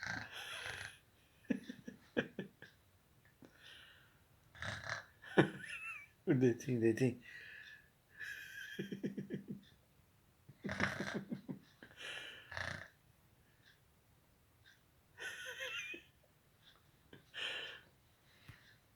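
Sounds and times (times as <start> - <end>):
rattling snores: 0.0 - 1.0, 4.5 - 5.2, 10.6 - 11.5, 12.4 - 13.0.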